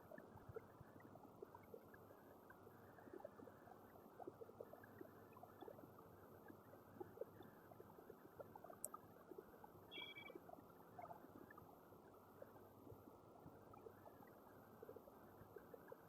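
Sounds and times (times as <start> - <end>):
faint tick: 8.4 - 9.1.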